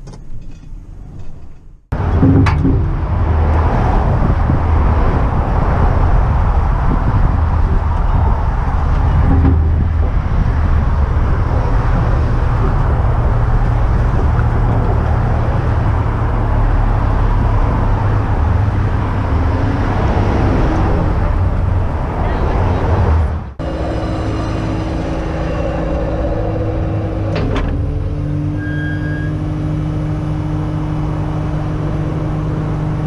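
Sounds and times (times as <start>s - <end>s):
heavy vehicle engine running: 1.9s - 33.0s.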